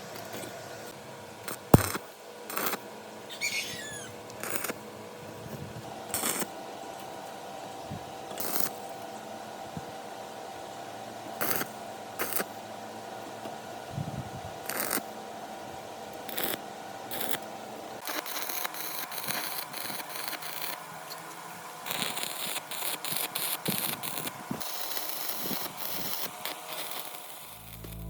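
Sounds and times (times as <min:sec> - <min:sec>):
faint steady hum: 0:00.0 - 0:28.0.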